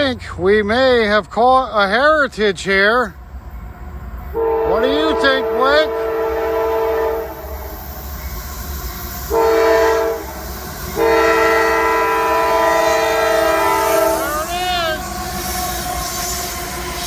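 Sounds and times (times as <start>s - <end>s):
low rumble of train: 0.0s - 17.0s
locomotive air horn blasts: 4.3s - 7.8s, 9.3s - 17.0s.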